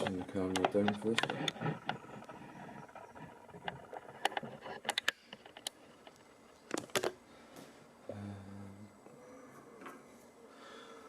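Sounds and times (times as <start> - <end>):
tools clicking and tapping: 0.0 - 2.3
low hum: 0.0 - 11.0.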